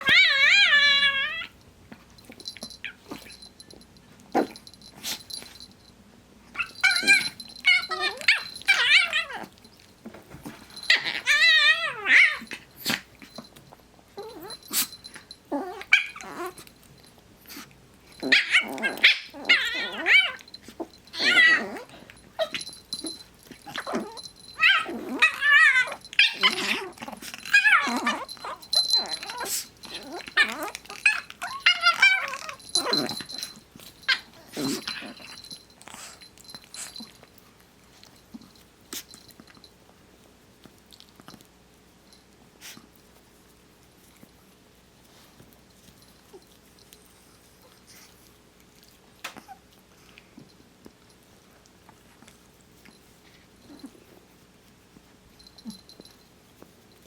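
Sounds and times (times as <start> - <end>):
puppy high-pitched wavering whine: 0.0 - 39.8, 45.1 - 51.2, 52.2 - 57.0
puppies growling: 4.3 - 5.7, 6.6 - 9.6, 10.4 - 13.4, 14.2 - 37.3
puppies yipping: 6.6 - 9.5, 18.2 - 35.6.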